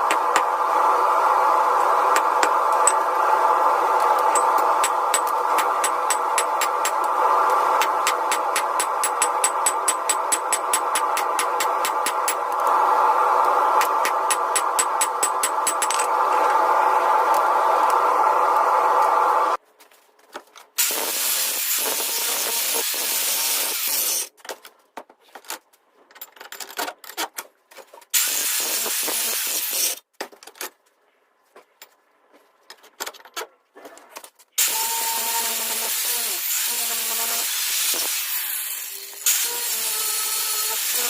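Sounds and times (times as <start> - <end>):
power grinder on steel: 20.8 - 24.3, 34.6 - 41.0
clicks and knocks of handling: 30.1 - 34.5.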